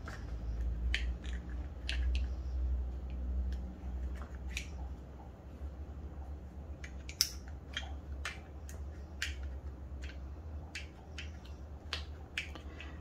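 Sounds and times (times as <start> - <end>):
pistol parts clicking: 0.0 - 2.4, 3.0 - 4.8, 6.8 - 10.2
steady low hum: 0.0 - 13.0.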